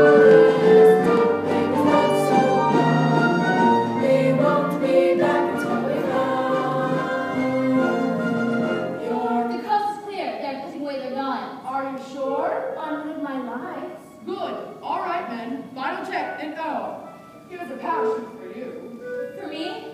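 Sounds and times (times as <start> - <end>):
chorus singing with orchestra: 0.0 - 9.7.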